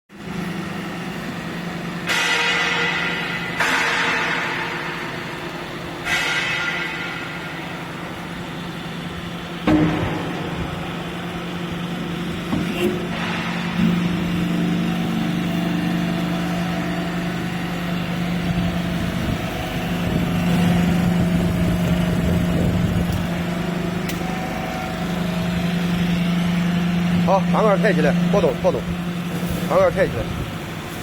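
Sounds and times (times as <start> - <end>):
hydraulic baler humming: 0.1 - 31.0
metal clanks and knocks: 2.0 - 7.6.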